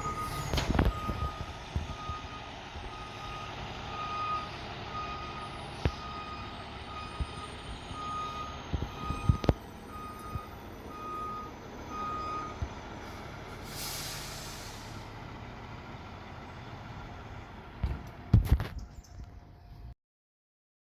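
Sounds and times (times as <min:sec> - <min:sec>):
truck reverse alarm beeping: 0:00.0 - 0:15.2
air release hiss: 0:13.6 - 0:15.0.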